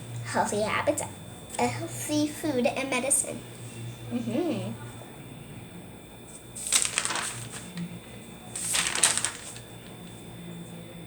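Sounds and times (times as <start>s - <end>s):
rustling crackly noise: 6.6s - 7.9s, 8.5s - 10.1s.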